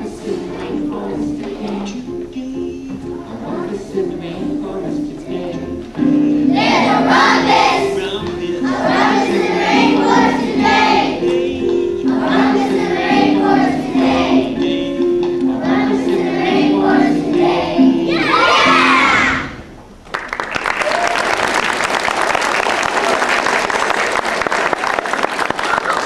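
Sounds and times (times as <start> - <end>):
children singing: 0.0 - 2.1, 2.8 - 19.6
musical backing track: 0.0 - 20.0.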